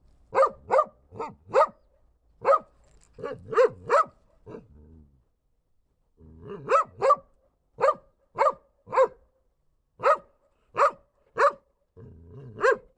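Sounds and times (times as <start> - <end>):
dog barking: 0.3 - 4.6, 6.5 - 9.2, 10.0 - 11.7, 12.5 - 12.9.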